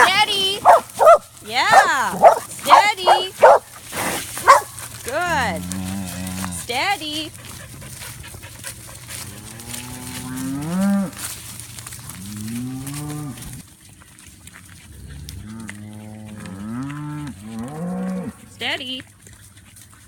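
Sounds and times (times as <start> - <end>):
cattle mooing rising in pitch: 4.5 - 6.7, 9.3 - 11.1, 15.0 - 18.4
low steady moo: 4.5 - 6.7, 9.2 - 11.2, 12.1 - 13.6, 14.9 - 18.7.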